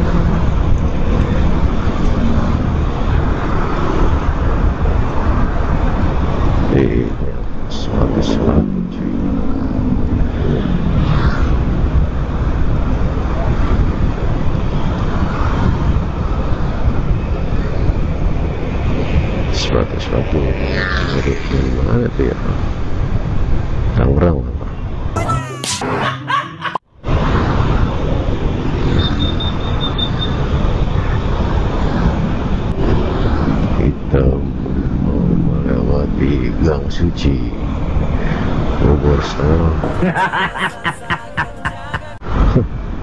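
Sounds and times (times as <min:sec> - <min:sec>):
motorcycle engine and road noise: 0:00.0 - 0:24.0, 0:27.0 - 0:38.9
wind rushing over microphone: 0:00.0 - 0:24.0.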